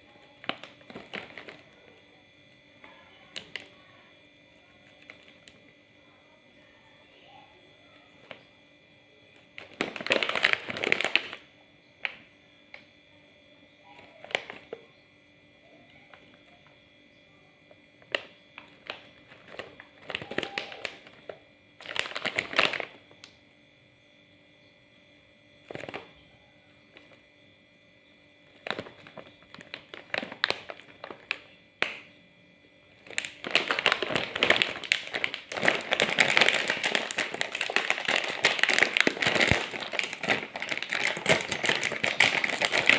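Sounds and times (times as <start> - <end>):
plastic snack packets crinkling: 0.0 - 2.0, 2.8 - 3.8, 4.8 - 5.6, 8.2 - 8.5, 9.4 - 12.8, 14.0 - 14.8, 18.0 - 23.3, 25.6 - 26.2, 28.5 - 32.1, 32.9 - 42.9.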